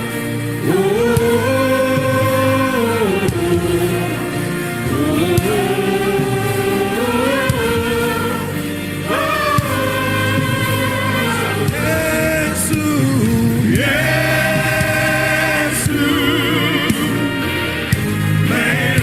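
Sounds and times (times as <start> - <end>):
choir singing gospel: 0.0 - 19.0
keyboard and bass accompaniment: 0.0 - 19.0.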